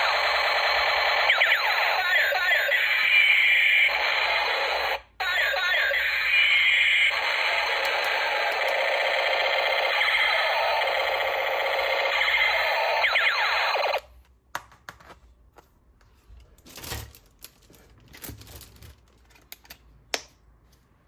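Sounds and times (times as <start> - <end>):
toy gun electronic zaps: 0.0 - 14.0.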